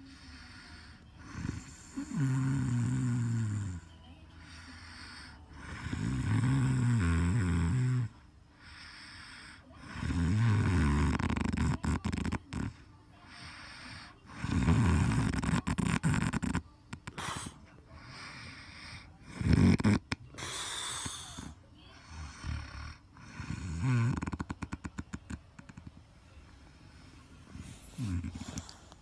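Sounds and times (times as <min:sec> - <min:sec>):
quiet breaths: 0:00.0 - 0:29.0
man snoring: 0:01.2 - 0:03.9, 0:04.7 - 0:12.8, 0:13.7 - 0:25.1, 0:27.5 - 0:29.0.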